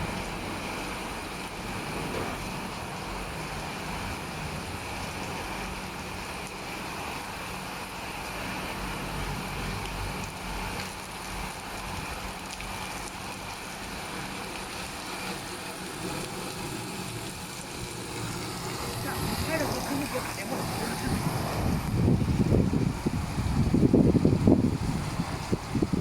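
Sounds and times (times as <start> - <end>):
vehicle washing machine hum: 0.0 - 26.0.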